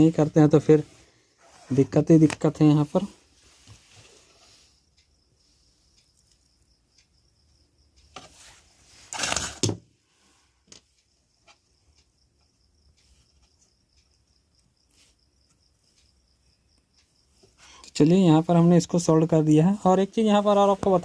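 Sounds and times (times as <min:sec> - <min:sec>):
light clicks and ticks: 0:04.8 - 0:08.8, 0:10.5 - 0:21.0.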